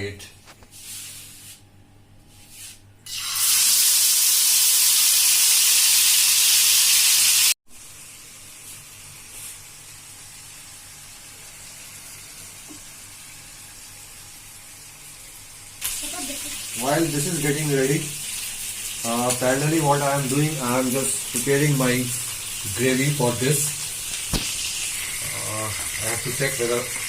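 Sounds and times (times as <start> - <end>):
chicken sizzling in hot oil: 3.0 - 27.0.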